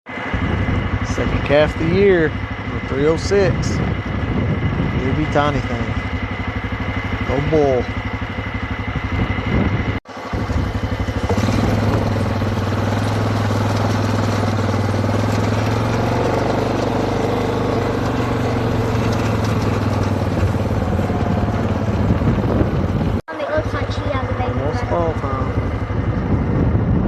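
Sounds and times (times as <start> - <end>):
vehicle engine running at low revs: 0.1 - 27.0.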